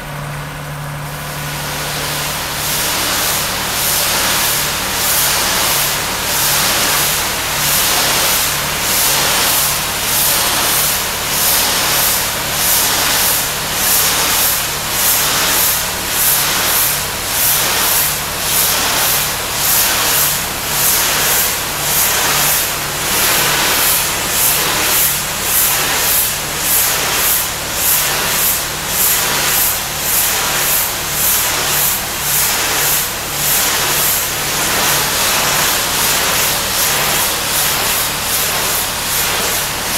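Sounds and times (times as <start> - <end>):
pressure washer engine hum: 0.0 - 39.9
high-pressure water spray hiss: 1.3 - 39.9.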